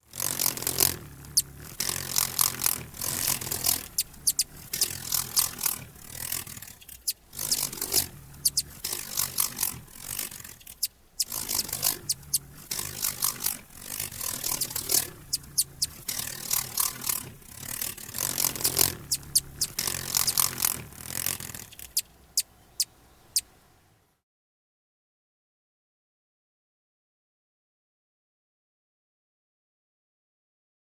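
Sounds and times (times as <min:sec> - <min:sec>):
hummingbird wings buzzing: 0:00.1 - 0:23.5
hummingbirds chirping: 0:00.5 - 0:17.0, 0:18.3 - 0:23.6.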